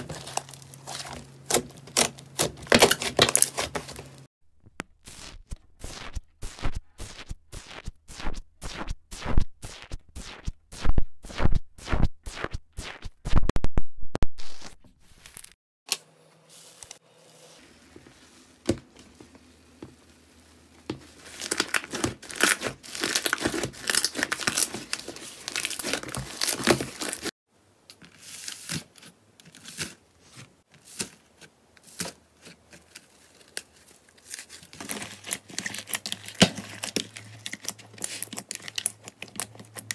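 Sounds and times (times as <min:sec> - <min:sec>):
slime crinkling and tearing: 0:00.0 - 0:04.0, 0:21.1 - 0:27.3, 0:32.0 - 0:39.9.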